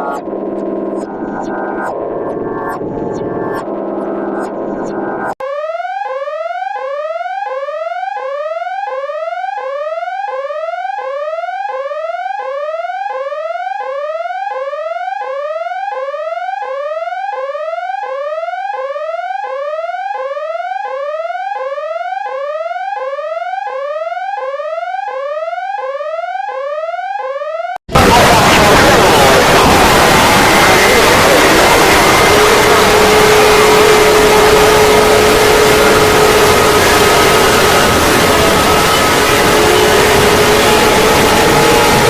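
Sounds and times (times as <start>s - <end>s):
electronic alarm rising sweep: 0.0s - 7.1s, 27.4s - 42.0s.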